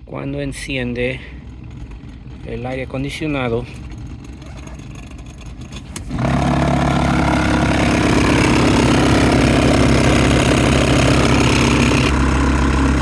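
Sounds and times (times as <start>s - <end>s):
blower motor grinding: 0.7s - 13.0s
low hum: 0.7s - 13.0s.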